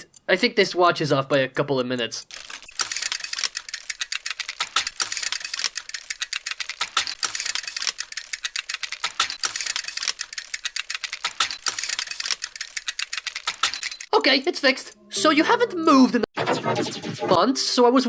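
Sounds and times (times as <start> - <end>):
rapid irregular clicking: 1.3 - 14.1.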